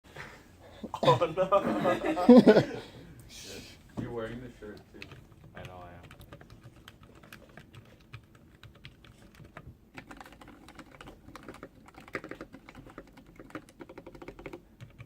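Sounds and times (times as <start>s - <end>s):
mechanical keyboard typing: 4.7s - 15.0s.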